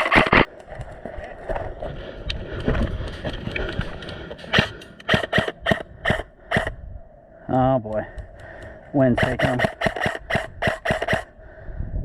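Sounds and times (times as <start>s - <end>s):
low outdoor rustle: 0.0s - 11.6s
airsoft rifle shots: 4.5s - 6.7s, 9.1s - 11.3s.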